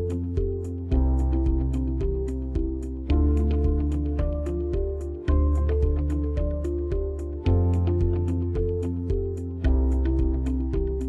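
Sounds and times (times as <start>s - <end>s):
soft instrumental music: 0.0s - 11.0s.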